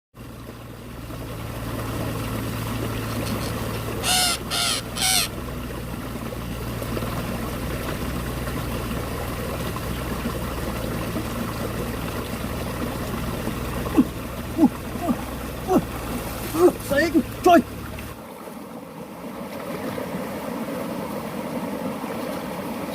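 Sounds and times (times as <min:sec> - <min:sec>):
bird calls: 0:03.0 - 0:05.4.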